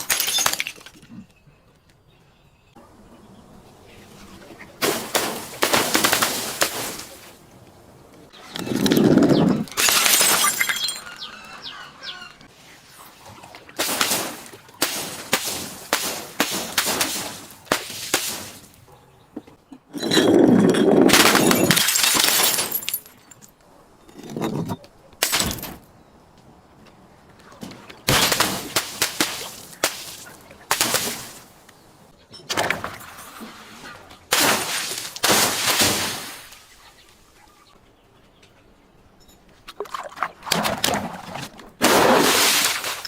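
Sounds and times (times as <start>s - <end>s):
glass bottles smashing: 0.0s - 1.1s, 4.8s - 7.4s, 9.6s - 11.2s, 20.0s - 23.6s, 24.2s - 25.8s, 28.1s - 31.5s, 34.3s - 36.4s.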